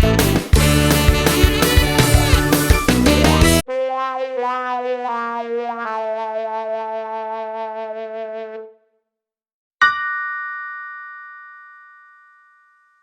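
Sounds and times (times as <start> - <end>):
background music: 0.0 - 3.6
bell ding: 9.8 - 13.0.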